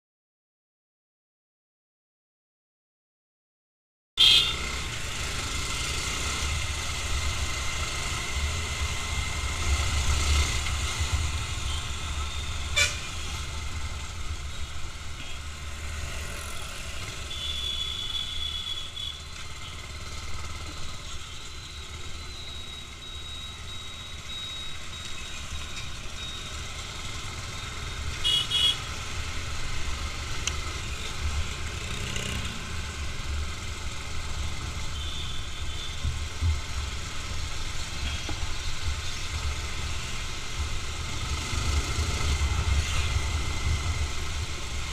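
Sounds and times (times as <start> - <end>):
vehicle horns: 4.2 - 4.8, 12.6 - 13.4, 17.1 - 19.8, 28.1 - 29.0, 34.9 - 36.1
road traffic rumble: 4.2 - 44.9.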